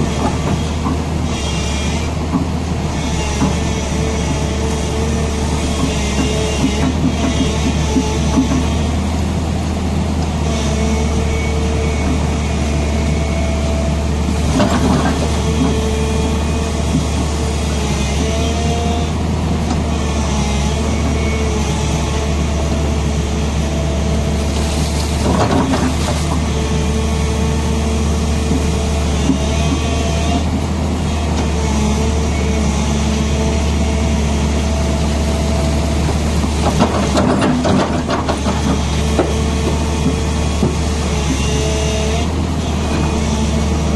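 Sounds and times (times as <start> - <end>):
excavator diesel engine running: 0.0 - 43.9.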